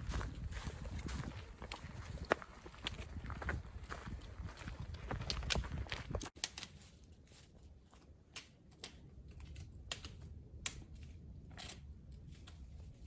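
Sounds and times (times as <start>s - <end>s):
footsteps on rocky trail: 0.0s - 6.4s.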